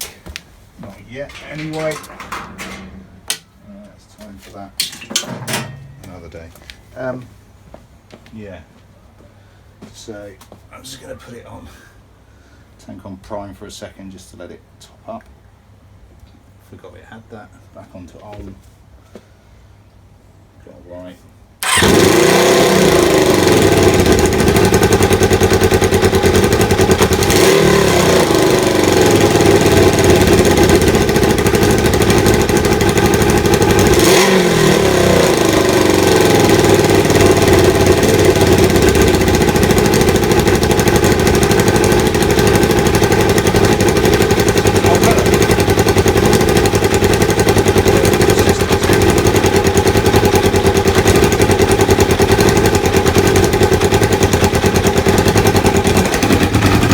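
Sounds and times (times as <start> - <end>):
motorcycle engine running: 1.4 - 3.3, 21.6 - 56.9.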